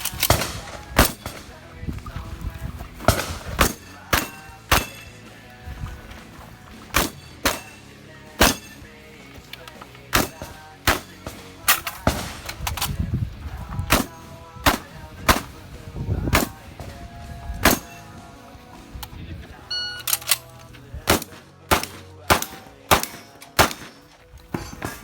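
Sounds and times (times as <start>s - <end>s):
shotgun firing: 0.0s - 1.6s, 3.1s - 5.2s, 6.9s - 7.8s, 8.4s - 8.8s, 10.1s - 12.8s, 13.9s - 15.7s, 16.3s - 17.0s, 17.6s - 18.1s, 21.1s - 24.1s
background music: 0.0s - 25.0s.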